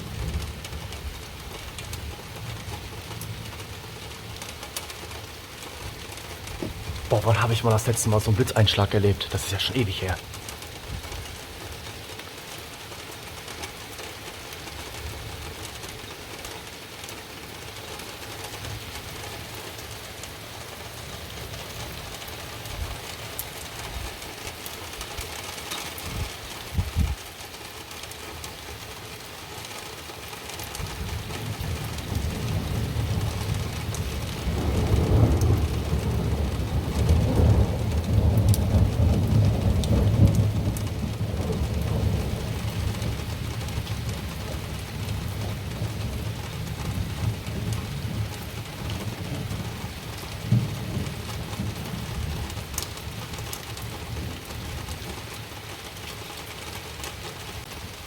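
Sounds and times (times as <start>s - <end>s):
steady rain hissing: 0.0s - 58.0s
thunder rumbling: 34.4s - 43.7s.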